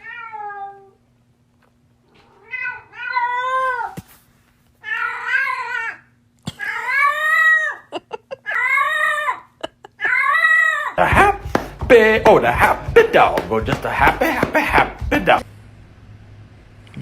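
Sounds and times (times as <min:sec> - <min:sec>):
cat yowling: 0:02.4 - 0:04.0, 0:04.8 - 0:07.9, 0:08.5 - 0:11.0.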